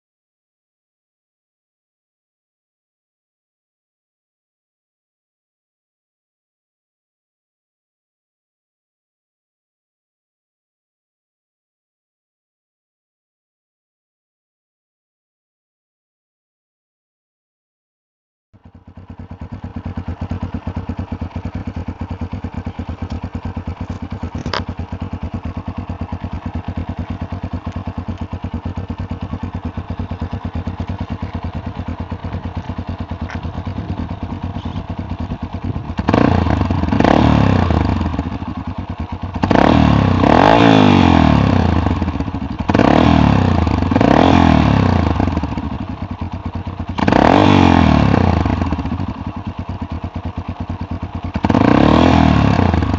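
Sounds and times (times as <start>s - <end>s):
motorcycle engine idling and revving: 18.6s - 52.9s.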